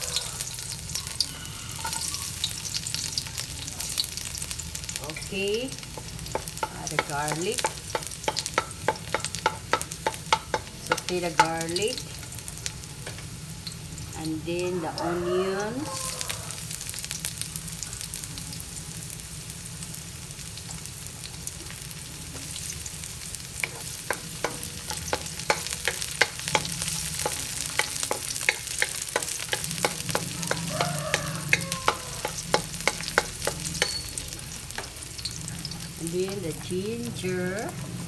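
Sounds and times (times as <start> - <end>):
garlic and onions sizzling in oil: 0.0 - 38.0
utensil knocking against pan: 5.9 - 11.8, 23.6 - 34.2.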